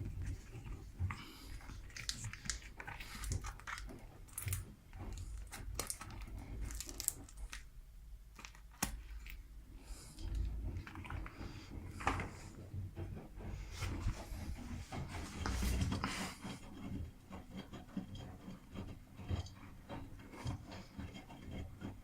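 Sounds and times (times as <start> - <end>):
laundry and water sloshing: 0.0 - 16.6.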